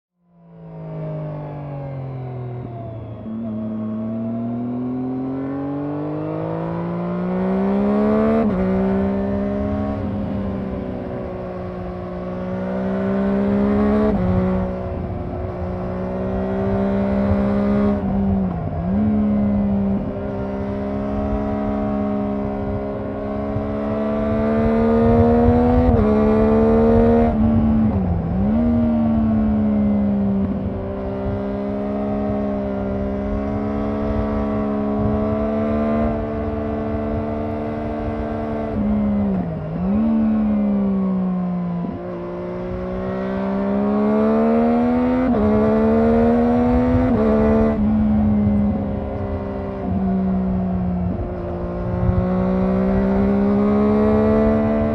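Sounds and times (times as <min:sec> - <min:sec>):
motorcycle engine revving: 0:02.9 - 0:54.9
wind rush: 0:13.4 - 0:41.2, 0:45.3 - 0:54.9.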